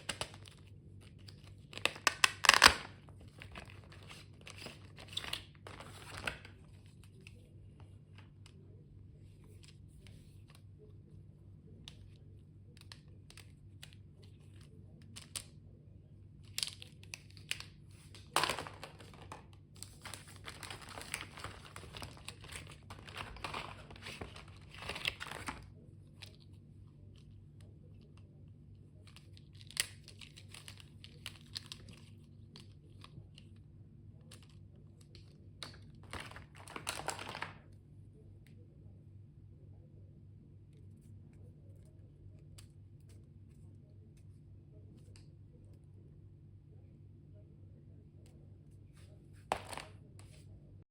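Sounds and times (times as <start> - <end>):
paper and plastic crinkling: 0.0 - 7.4, 16.5 - 26.5, 34.3 - 37.7
faint low hum: 0.0 - 50.9.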